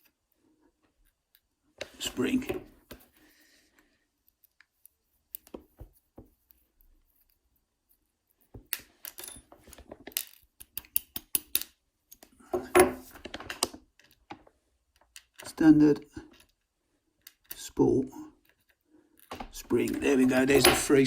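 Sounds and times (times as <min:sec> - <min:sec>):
lock pins clicking and rattling: 0:08.7 - 0:14.3.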